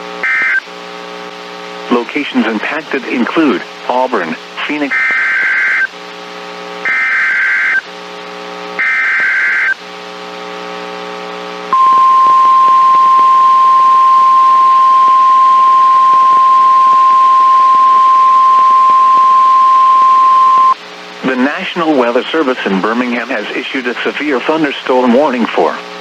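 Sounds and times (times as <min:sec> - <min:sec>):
steady buzz: 0:11.7 - 0:21.2
steady alarm tone: 0:11.8 - 0:20.8.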